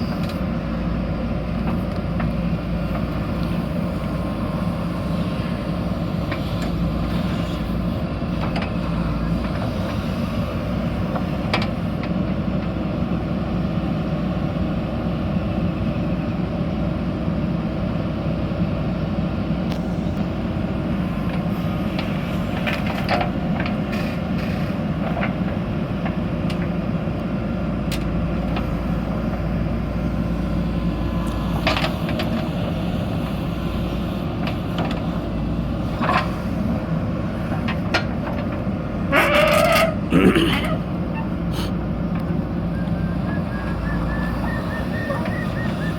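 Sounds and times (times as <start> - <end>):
diesel engine running: 0.0 - 45.9.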